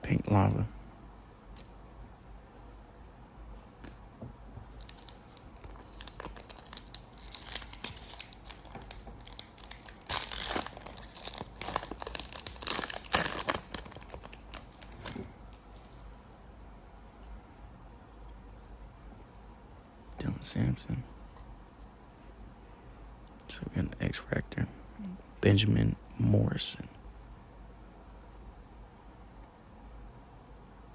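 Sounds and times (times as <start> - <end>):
wrapper tearing and crinkling: 4.7 - 16.0.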